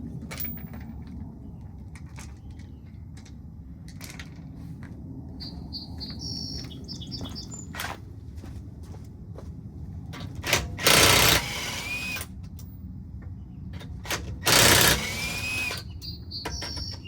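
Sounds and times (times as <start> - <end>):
handling clicks and knocks: 0.2 - 4.5
impact wrench rattling: 10.2 - 12.3, 13.8 - 15.9.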